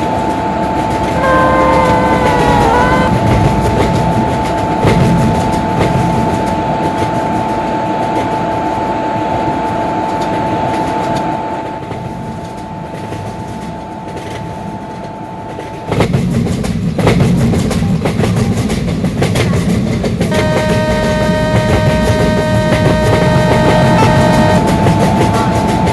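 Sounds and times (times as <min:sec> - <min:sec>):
train rumbling on rails: 0:00.0 - 0:25.9
wheels clicking over rail joints: 0:00.1 - 0:08.4, 0:10.1 - 0:25.9
thin steady whine: 0:20.3 - 0:25.9.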